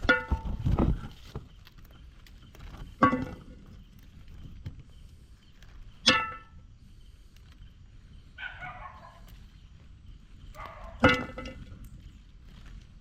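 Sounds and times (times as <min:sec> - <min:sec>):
dog barking: 0:08.4 - 0:09.3, 0:10.6 - 0:11.1.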